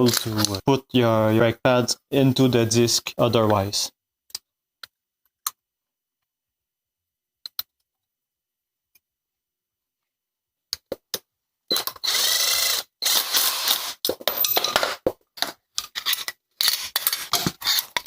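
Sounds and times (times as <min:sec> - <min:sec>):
metal tools clinking and clattering: 0:14.1 - 0:15.0.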